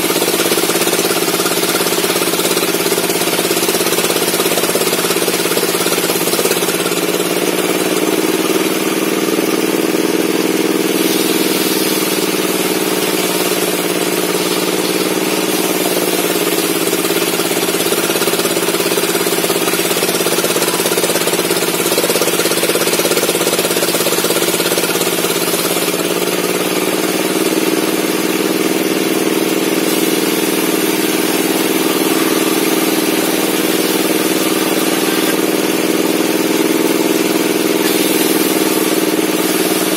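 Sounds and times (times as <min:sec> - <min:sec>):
circular table saw running: 0:00.0 - 0:39.9.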